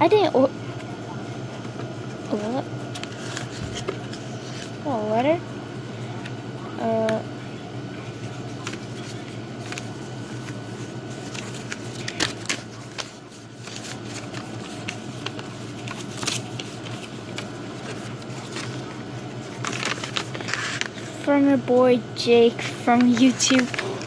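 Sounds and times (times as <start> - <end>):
steady low hum: 0.0 - 24.0
paper rustling and crinkling: 0.8 - 4.8, 8.0 - 21.6, 22.6 - 24.0.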